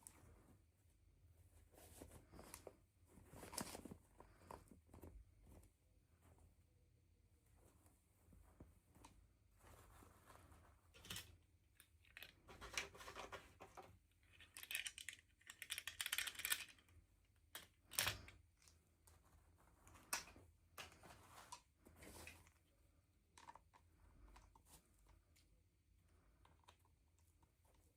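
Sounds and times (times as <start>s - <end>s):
small parts clicking: 14.2s - 16.9s.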